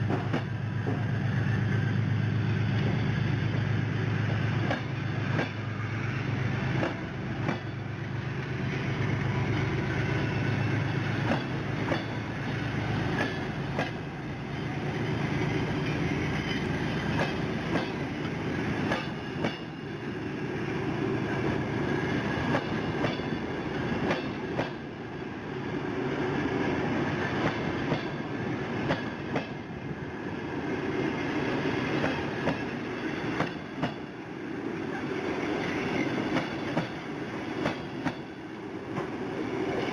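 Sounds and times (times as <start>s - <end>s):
train wheels clicking over rail joints: 0.0s - 1.2s, 2.7s - 5.8s, 6.7s - 8.5s, 10.9s - 20.0s, 21.8s - 25.0s, 26.9s - 29.7s, 30.9s - 34.2s, 35.0s - 39.9s
train rumble: 0.0s - 39.9s.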